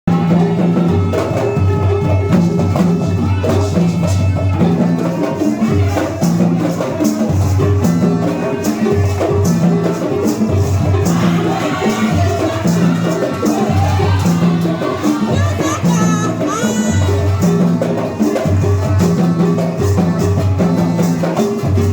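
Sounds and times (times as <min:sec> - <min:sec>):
hand percussion: 0:00.1 - 0:21.9.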